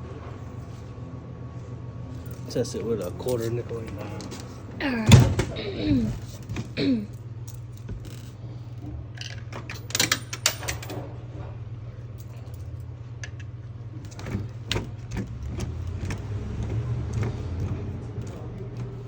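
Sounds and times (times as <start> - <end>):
coins clinking through vending machine: 9.2 - 11.0.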